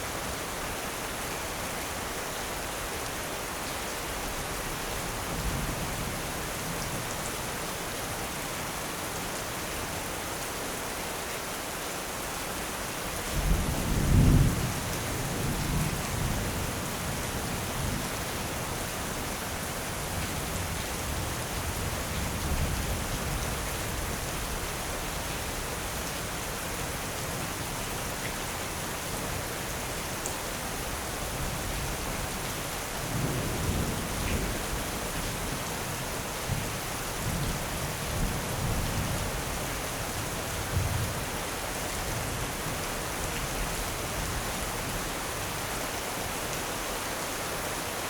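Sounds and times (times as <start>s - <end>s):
heavy rain falling: 0.0s - 48.0s.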